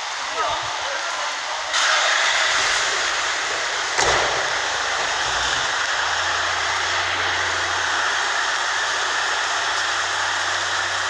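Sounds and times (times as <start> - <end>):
hail and heavy rain: 0.0 - 11.0
sharp knock: 4.0 - 5.7.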